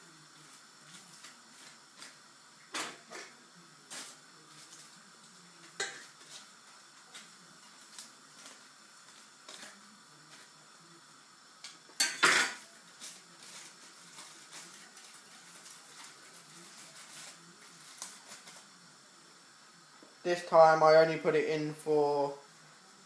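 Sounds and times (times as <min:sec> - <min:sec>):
metal cookware clinking: 0:05.8 - 0:06.1, 0:11.6 - 0:12.6
loud cookware clatter: 0:12.0 - 0:12.6.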